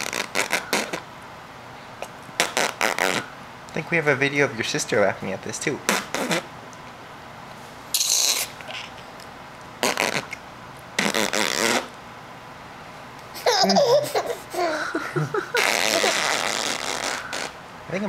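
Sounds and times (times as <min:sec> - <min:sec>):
adult blowing raspberries: 0:00.0 - 0:01.1, 0:02.0 - 0:03.4, 0:05.9 - 0:06.5, 0:07.9 - 0:09.0, 0:09.8 - 0:10.4, 0:11.0 - 0:12.0, 0:15.5 - 0:17.6
baby laughing and squealing: 0:13.3 - 0:17.6.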